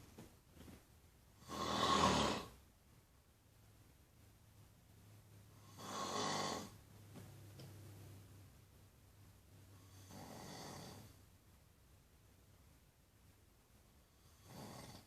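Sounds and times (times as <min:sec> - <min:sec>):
person snoring: 0:01.4 - 0:02.6, 0:05.6 - 0:06.8, 0:09.8 - 0:11.2, 0:14.2 - 0:15.0.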